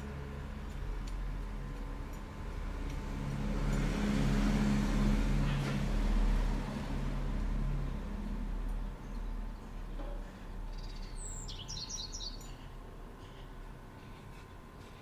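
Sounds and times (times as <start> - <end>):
motor vehicle passing by: 0.0 - 9.9.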